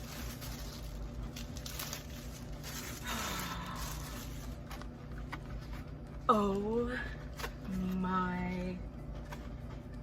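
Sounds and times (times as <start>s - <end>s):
packaging rustling and clicking: 0.0s - 6.0s
washing machine humming: 0.0s - 10.0s.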